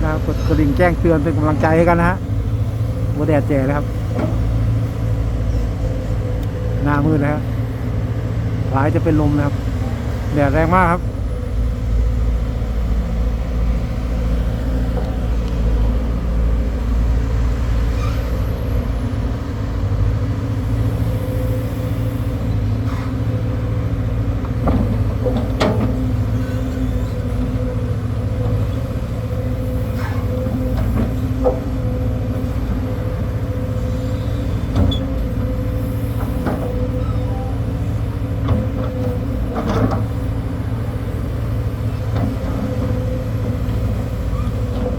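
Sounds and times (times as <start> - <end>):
diesel excavator engine running: 0.0 - 44.9.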